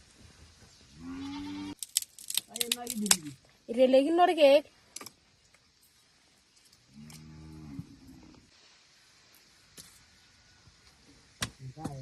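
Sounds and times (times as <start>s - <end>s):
cow mooing: 1.0s - 1.8s.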